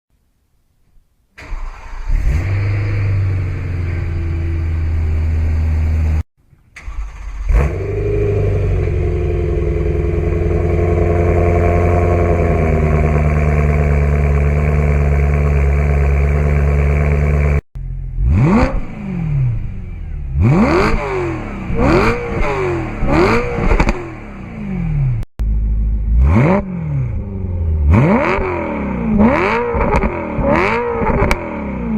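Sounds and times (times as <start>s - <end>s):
engine revving: 1.4s - 6.2s, 6.8s - 31.9s
car engine idling: 6.8s - 18.6s, 21.4s - 26.4s.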